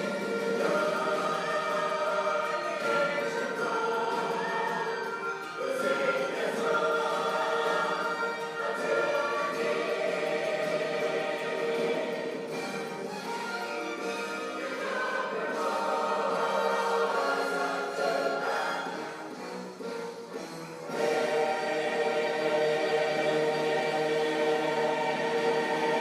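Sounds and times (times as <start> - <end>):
choir singing held notes: 0.0 - 26.0.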